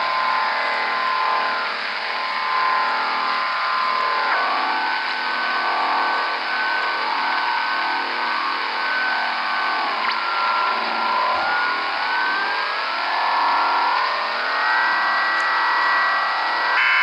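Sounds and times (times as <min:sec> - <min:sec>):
steady radio whistle: 0:15.4 - 0:17.0.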